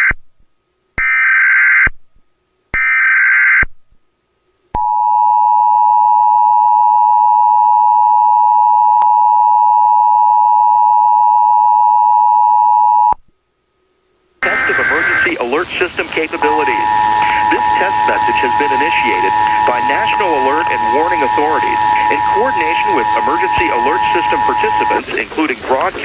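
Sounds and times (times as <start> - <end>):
shrill digital data tones: 14.4 - 25.9
two-tone attention signal: 16.3 - 25.1.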